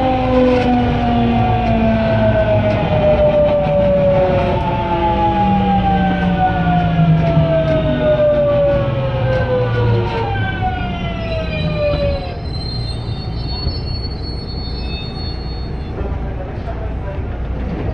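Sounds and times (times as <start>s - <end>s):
train inverter whining: 0.0s - 16.1s
train rolling rumble: 0.0s - 17.9s
faint high whistle: 12.0s - 15.9s.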